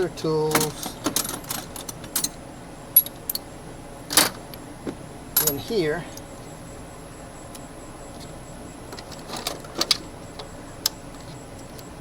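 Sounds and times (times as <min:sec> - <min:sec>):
metal hand tools clinking: 0:05.4 - 0:05.7.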